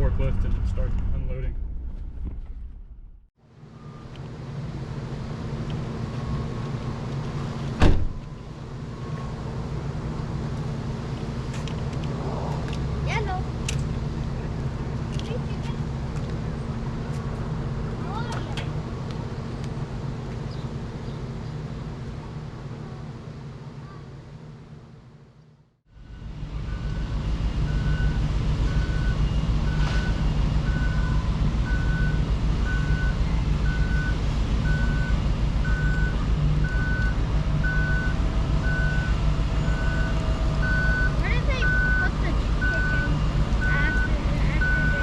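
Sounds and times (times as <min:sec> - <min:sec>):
vehicle engine running: 0:00.0 - 0:45.0
forklift engine running: 0:26.0 - 0:45.0
reversing alarm beeping: 0:26.1 - 0:45.0.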